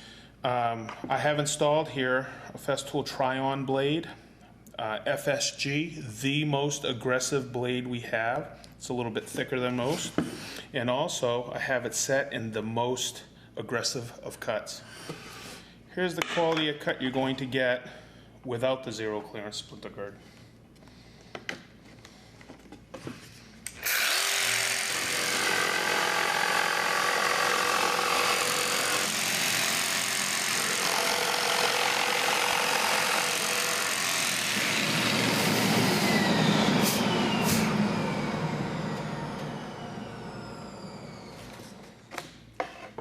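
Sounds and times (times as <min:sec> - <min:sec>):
jigsaw cutting: 0:23.8 - 0:42.0.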